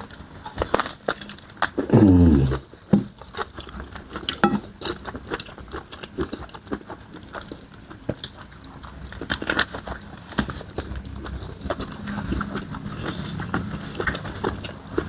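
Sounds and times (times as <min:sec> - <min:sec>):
chewing with wet mouth clicks: 0:03.6 - 0:15.0.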